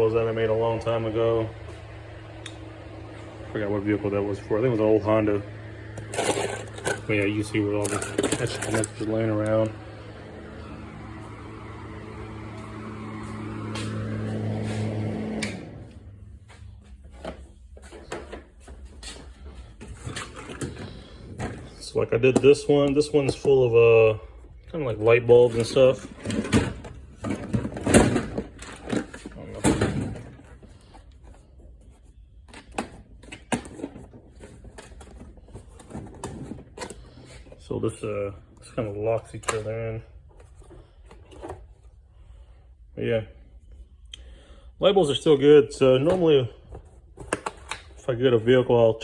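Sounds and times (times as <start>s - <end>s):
electric motor humming: 1.5s - 16.2s
plastic cases clicking and knocking: 7.8s - 9.0s.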